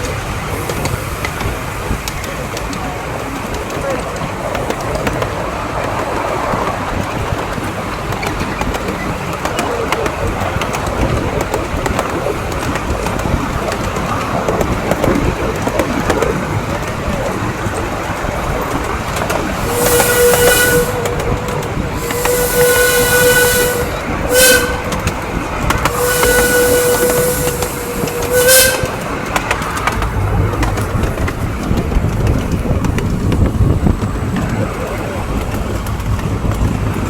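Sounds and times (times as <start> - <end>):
steam hissing: 0.0 - 5.3, 11.7 - 35.8
train rumbling on rails: 0.0 - 37.0
steam locomotive whistle: 19.6 - 29.4.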